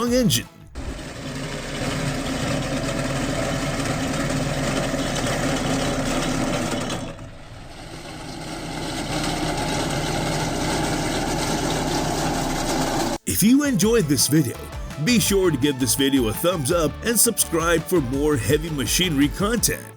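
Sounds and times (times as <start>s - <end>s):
heavy machine engine running: 0.1s - 13.2s.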